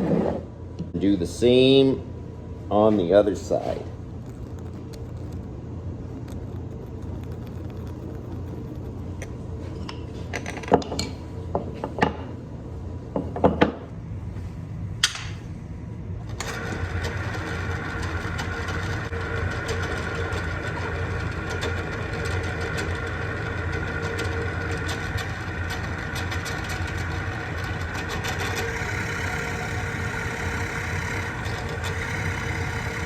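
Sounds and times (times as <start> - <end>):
steady low hum: 3.4 - 9.9
power drill boring through wood: 28.4 - 33.0.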